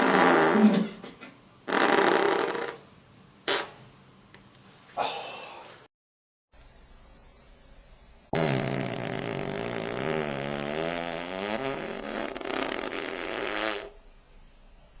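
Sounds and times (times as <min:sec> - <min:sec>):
long wobbling fart: 0:00.0 - 0:01.0, 0:01.7 - 0:02.8, 0:03.5 - 0:03.8, 0:08.3 - 0:14.0.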